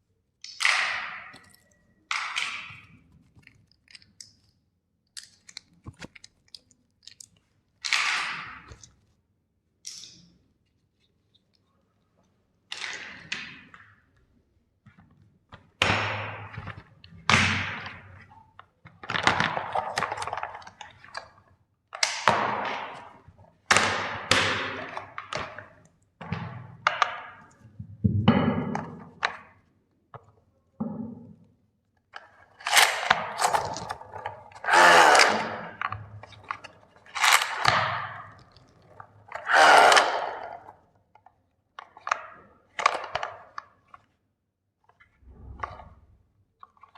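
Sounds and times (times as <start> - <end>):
plastic toys cracking and crunching: 0.4 - 9.1, 18.9 - 23.2, 32.1 - 44.2.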